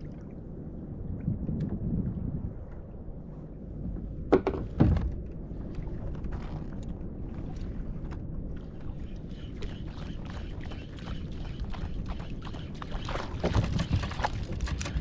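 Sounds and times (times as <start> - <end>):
water noise: 0.0 - 15.0.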